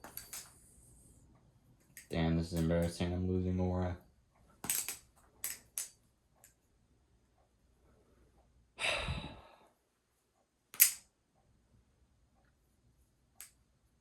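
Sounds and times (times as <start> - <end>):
person sighing heavily: 8.8 - 9.7.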